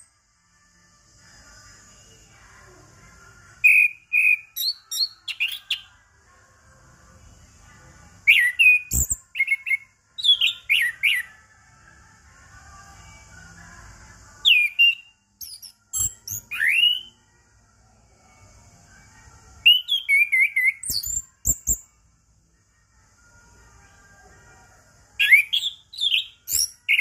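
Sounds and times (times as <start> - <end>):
bird singing whistles and chirps: 3.6 - 5.9, 8.2 - 11.4, 14.4 - 17.2, 19.6 - 21.9, 25.2 - 27.0.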